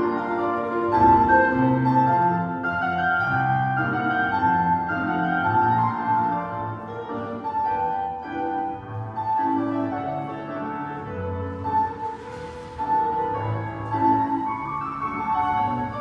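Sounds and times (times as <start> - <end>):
classical piano music: 0.0 - 16.0.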